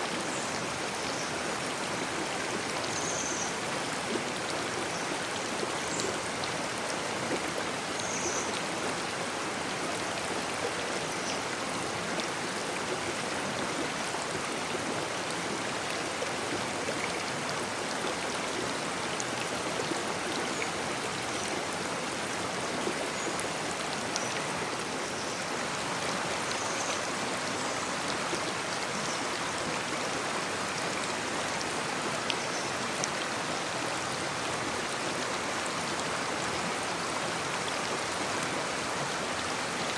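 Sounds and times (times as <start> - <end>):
babbling brook: 0.0 - 39.9.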